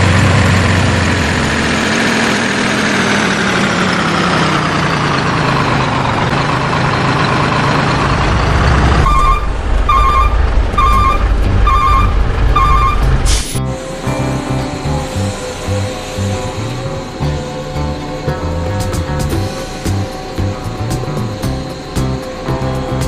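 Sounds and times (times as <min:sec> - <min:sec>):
toy engine sound effect: 0:08.5 - 0:23.0
reversing alarm beeps: 0:09.0 - 0:13.2.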